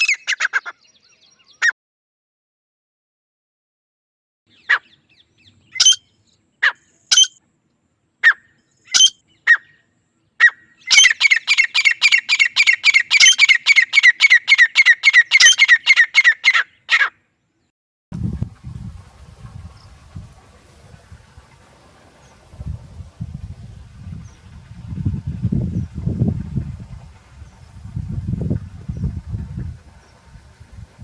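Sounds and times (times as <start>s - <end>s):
francolin calling: 4.5s - 7.4s, 8.2s - 17.1s
low rumbling noise: 18.2s - 31.0s.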